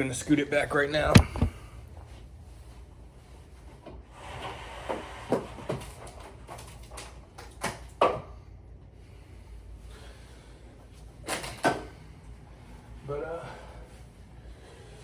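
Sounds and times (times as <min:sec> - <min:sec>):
desk scraping: 0:01.1 - 0:01.6
desk shoved across floor: 0:01.1 - 0:01.6.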